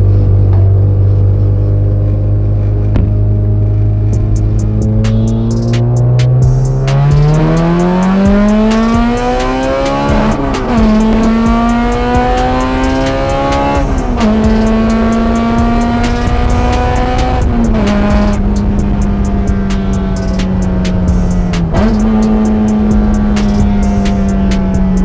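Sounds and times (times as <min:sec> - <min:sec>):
car engine accelerating: 0:00.0 - 0:25.0.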